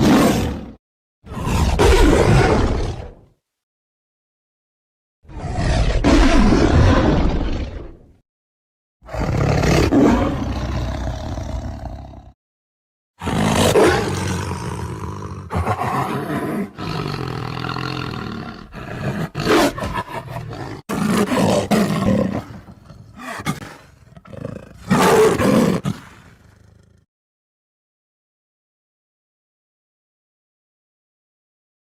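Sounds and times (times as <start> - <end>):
tiger roaring and growling: 0.0 - 3.3, 5.3 - 8.1, 9.0 - 12.4, 13.2 - 27.0.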